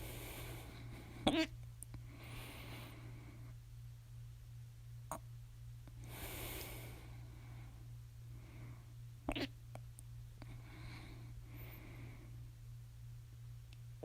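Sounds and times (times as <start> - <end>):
person breathing: 0.0 - 1.3, 2.0 - 3.6, 6.0 - 9.0, 10.4 - 12.5
low electrical hum: 0.0 - 14.0
person hiccuping: 1.3 - 1.5, 9.3 - 9.5.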